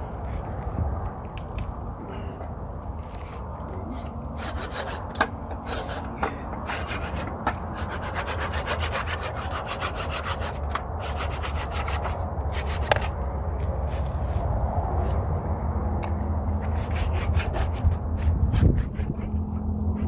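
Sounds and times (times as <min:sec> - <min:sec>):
hand saw cutting wood: 0:04.4 - 0:13.1, 0:16.6 - 0:20.0.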